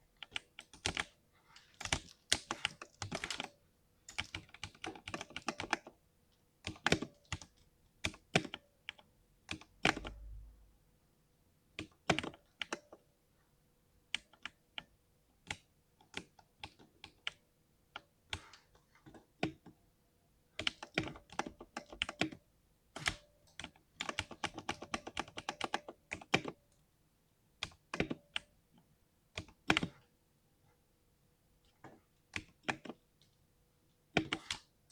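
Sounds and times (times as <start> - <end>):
mechanical keyboard typing: 0.2 - 1.2, 1.8 - 3.5, 4.1 - 5.9, 6.6 - 10.2, 11.8 - 13.0, 20.6 - 22.4, 23.0 - 26.6, 27.6 - 28.6, 29.4 - 30.0, 32.4 - 33.0, 34.1 - 34.7.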